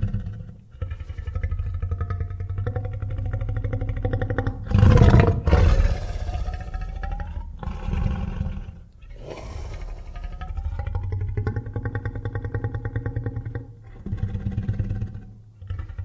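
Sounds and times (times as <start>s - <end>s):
monster growling and roaring: 4.7s - 10.5s.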